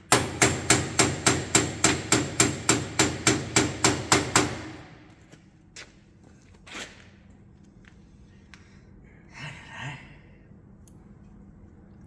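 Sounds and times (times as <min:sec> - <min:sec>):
hammer tapping on metal: 0:00.1 - 0:04.8.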